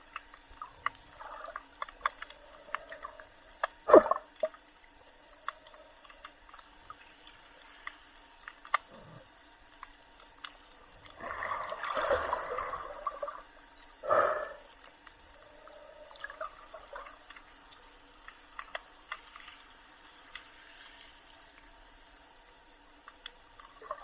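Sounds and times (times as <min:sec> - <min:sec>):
seawater sloshing and gurgling: 0:00.0 - 0:07.6, 0:10.5 - 0:14.6
faint clicks: 0:00.0 - 0:12.3, 0:14.7 - 0:24.0.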